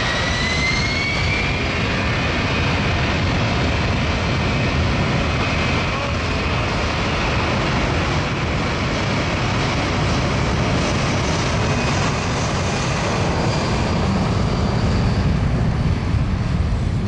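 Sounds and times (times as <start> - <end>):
jet engines rushing: 0.0 - 17.0.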